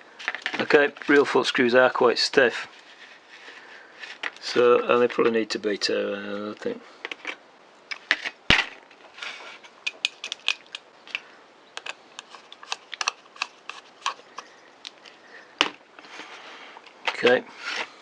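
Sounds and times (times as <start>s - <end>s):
small metal parts clicking: 9.8s - 10.8s.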